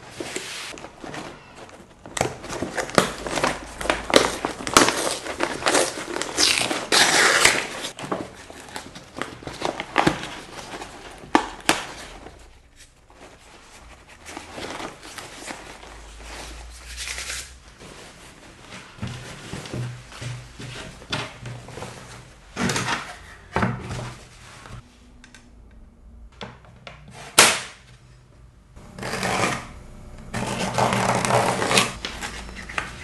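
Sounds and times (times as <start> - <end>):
plastic bag rustling and crinkling: 0.0 - 23.2, 30.4 - 33.0.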